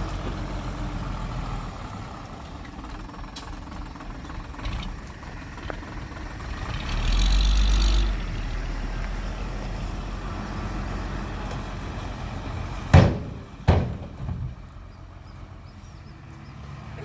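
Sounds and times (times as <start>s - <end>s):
heavy vehicle engine running: 0.0s - 17.0s
loud bangs: 12.9s - 14.6s.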